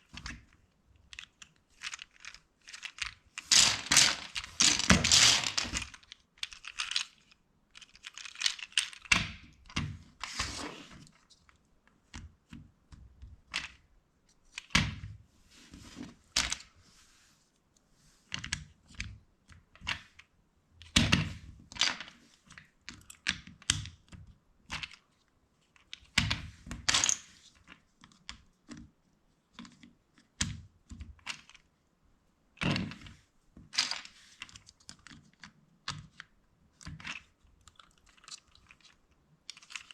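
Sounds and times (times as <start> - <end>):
plastic bricks clicking: 0.1 - 9.3, 33.8 - 39.9
soft shuffling noise: 15.4 - 16.2, 16.8 - 18.3.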